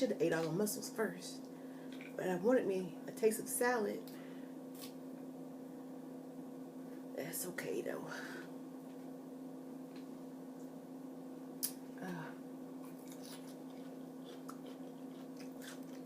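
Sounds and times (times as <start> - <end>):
steady low hum: 0.0 - 16.0
person chewing: 12.8 - 16.0.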